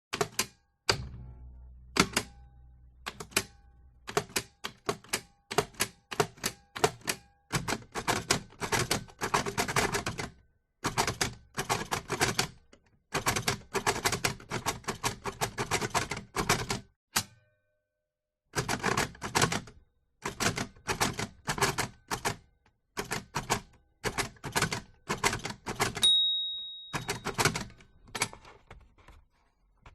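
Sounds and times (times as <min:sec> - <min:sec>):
low rumble: 0:01.0 - 0:04.1.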